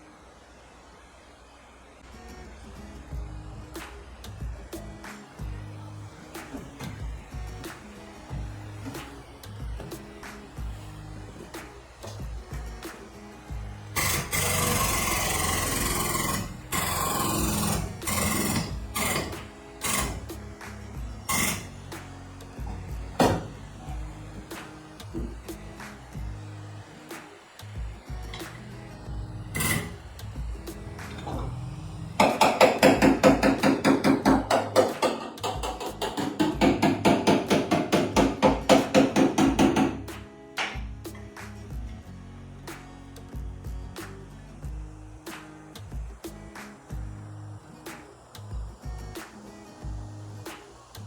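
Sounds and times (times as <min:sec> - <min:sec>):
background music: 0:01.0 - 0:51.0
fast-hammering power tool: 0:04.8 - 0:40.8
hammer blows on sheet metal: 0:32.2 - 0:41.5.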